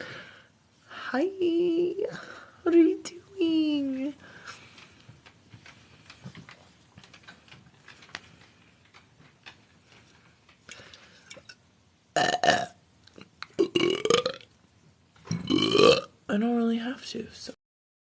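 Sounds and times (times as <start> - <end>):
faint small clicks and taps: 4.5 - 11.6
woman belching: 12.2 - 12.8, 13.5 - 14.5, 15.3 - 16.1.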